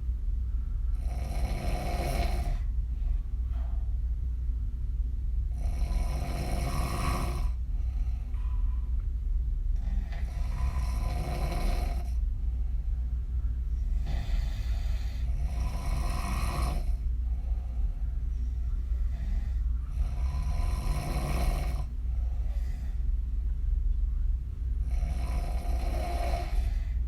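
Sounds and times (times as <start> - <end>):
steady low hum: 0.0 - 27.0
woman snoring: 0.9 - 2.7, 5.5 - 7.6, 9.8 - 12.2, 14.0 - 17.0, 19.1 - 22.9, 24.8 - 27.0.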